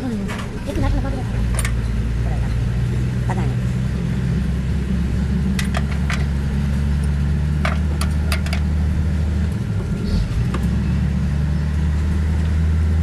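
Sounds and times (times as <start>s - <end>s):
engine idling: 0.0s - 13.0s.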